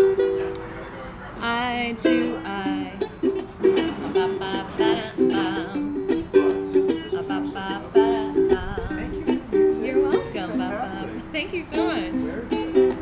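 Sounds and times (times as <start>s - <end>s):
ukulele playing: 0.0s - 13.0s.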